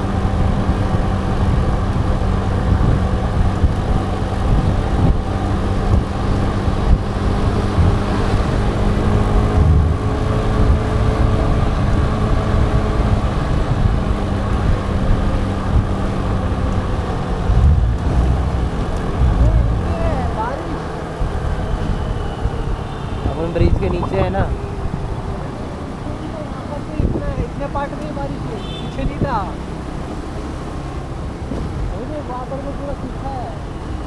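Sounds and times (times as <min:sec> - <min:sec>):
wind noise on microphone: 0:00.0 - 0:25.4, 0:26.9 - 0:27.5
scooter engine hum: 0:00.0 - 0:28.8
road traffic: 0:00.0 - 0:34.0.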